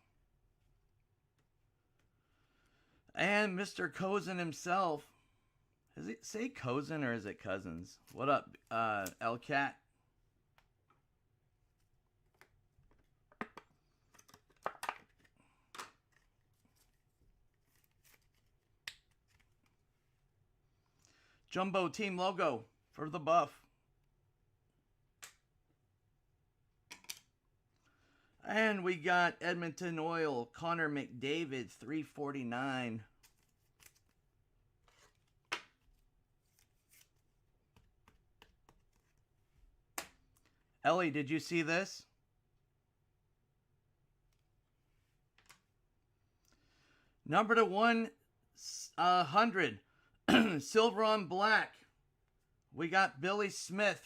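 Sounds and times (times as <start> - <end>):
trading cards sliding and flicking: 34.8 - 39.2.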